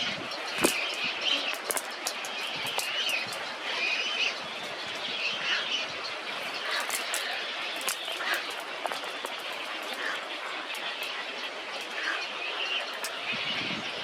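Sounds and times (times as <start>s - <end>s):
bird warbling: 0.0s - 13.6s
sharp clicks and taps: 0.6s - 3.4s.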